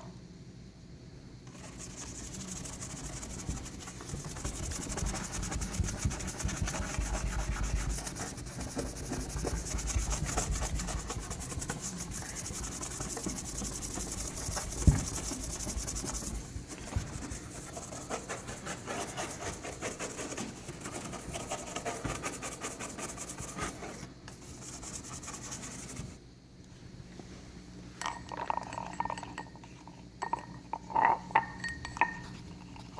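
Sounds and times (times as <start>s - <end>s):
scratchy rubbing on car paint: 1.5s - 26.2s.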